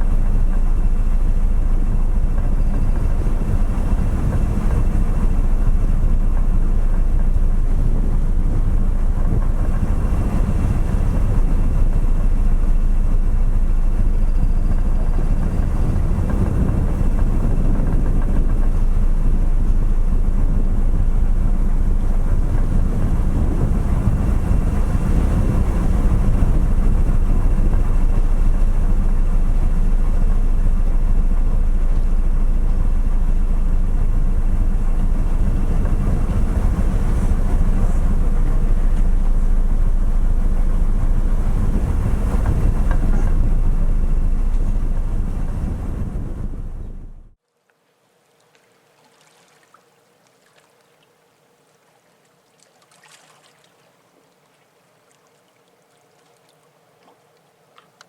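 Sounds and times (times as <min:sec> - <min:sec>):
ferry engines droning: 0:00.0 - 0:47.4
rushing water noise: 0:48.2 - 0:58.0.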